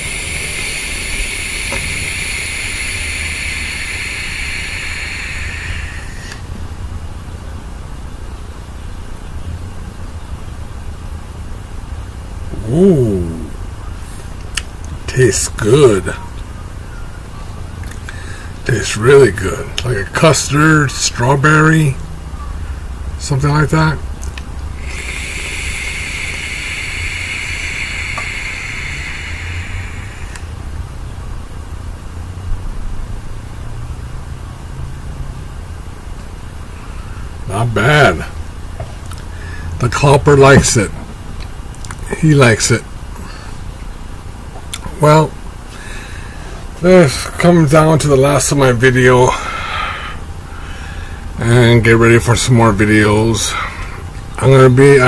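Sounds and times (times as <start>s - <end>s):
vape airflow hissing: 0.0s - 6.5s, 24.7s - 30.6s.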